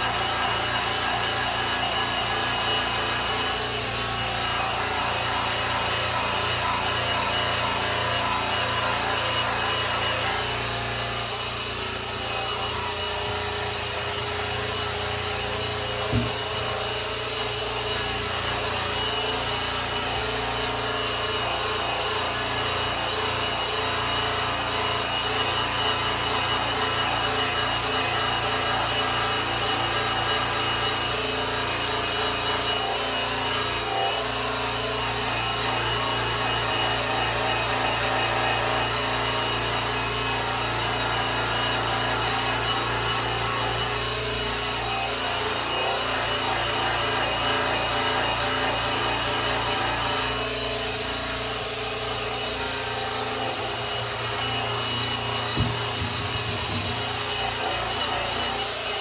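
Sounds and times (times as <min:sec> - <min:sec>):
electric polisher running: 0:00.0 - 0:59.0
short knock: 0:16.1 - 0:16.4, 0:55.6 - 0:57.0.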